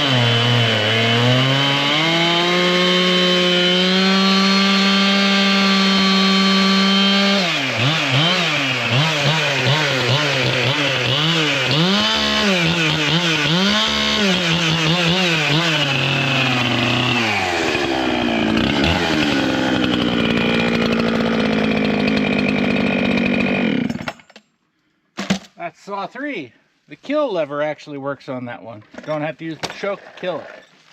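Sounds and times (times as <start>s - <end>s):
chainsaw cutting wood: 0.0s - 24.4s.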